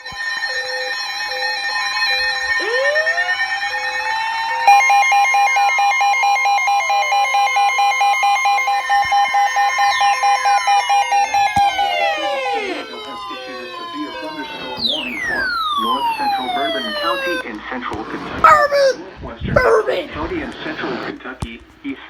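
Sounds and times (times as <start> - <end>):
steady electronic alarm tones: 4.7 - 17.4.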